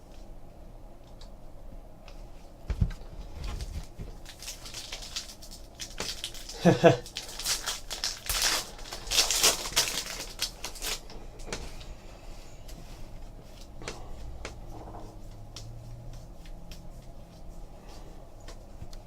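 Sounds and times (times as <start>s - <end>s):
card packs crinkling: 3.5s - 11.2s.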